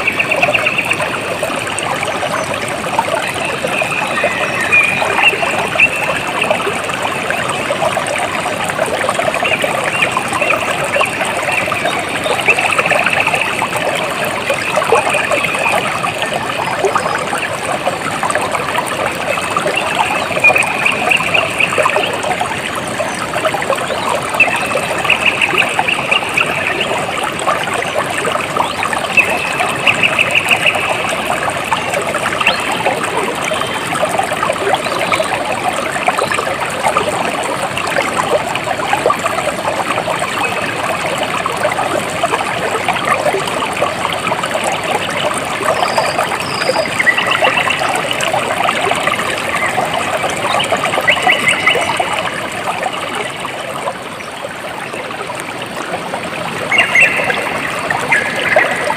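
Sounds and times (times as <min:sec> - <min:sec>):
stream trickling: 0:00.0 - 0:58.9.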